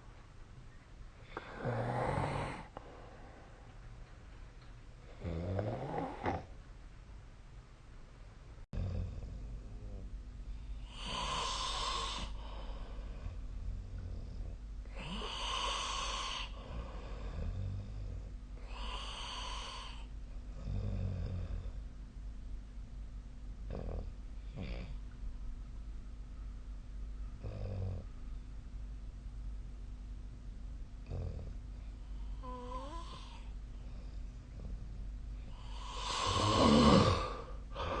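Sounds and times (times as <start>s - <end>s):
faint low breaths: 1.1s - 6.6s, 8.8s - 21.9s, 31.0s - 38.0s
person snoring: 1.2s - 3.1s, 5.1s - 6.5s, 10.8s - 13.4s, 14.9s - 18.0s, 18.6s - 21.7s, 32.2s - 33.5s, 35.5s - 38.0s.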